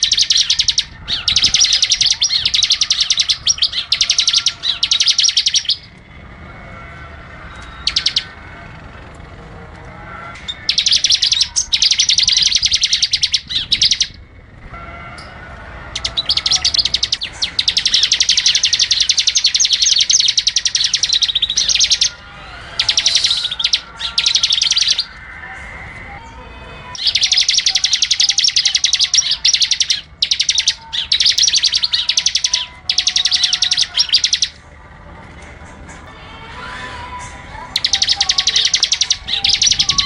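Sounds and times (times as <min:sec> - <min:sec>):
songbird trilling: 0:00.0 - 0:05.9, 0:07.6 - 0:08.4, 0:10.5 - 0:14.2, 0:16.0 - 0:25.2, 0:27.0 - 0:34.6, 0:37.7 - 0:40.0.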